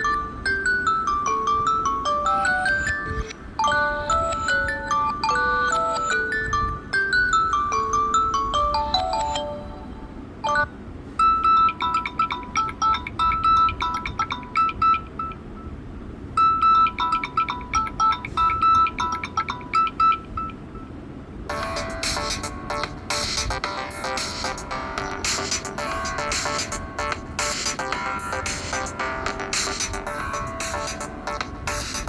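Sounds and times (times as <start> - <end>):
dense electronic ringtone: 0.0 - 15.8, 16.4 - 20.9, 21.5 - 32.0
bright ringtone melody: 0.0 - 20.9, 21.5 - 32.0
sharp percussive beat: 21.5 - 32.0.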